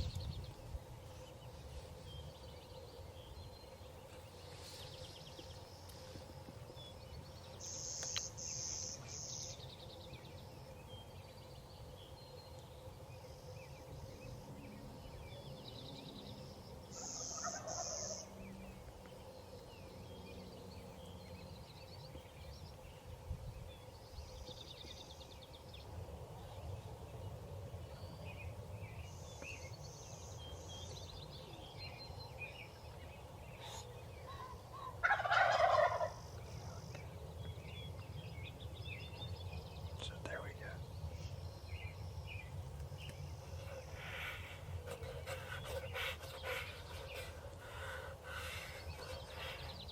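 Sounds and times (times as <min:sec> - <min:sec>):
small birds chirping: 0:00.0 - 0:49.9
turkey gobbling: 0:17.4 - 0:17.9, 0:34.9 - 0:36.2.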